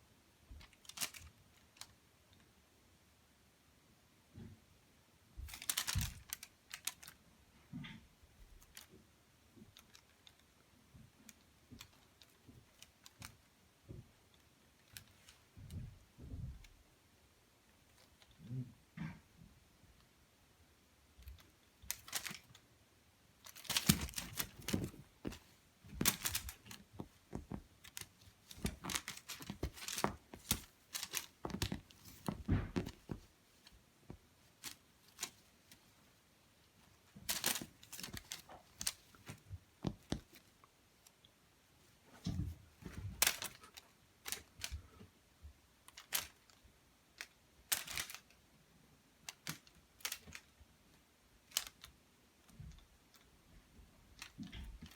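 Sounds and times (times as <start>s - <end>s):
cat playing with toy on floor: 21.3s - 22.6s, 23.4s - 35.9s, 37.0s - 40.5s.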